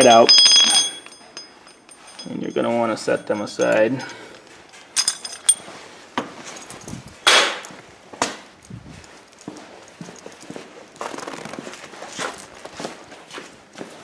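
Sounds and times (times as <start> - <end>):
metal pins clinking: 0.0 - 5.8, 6.4 - 11.6.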